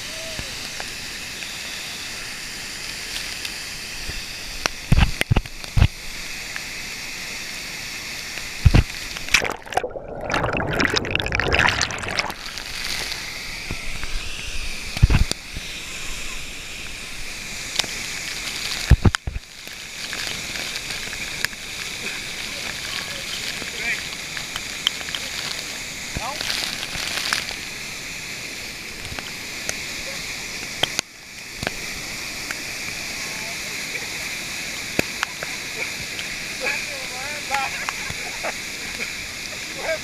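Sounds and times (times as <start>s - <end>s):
water rushing: 2.6s - 40.0s
water sloshing: 9.2s - 13.0s.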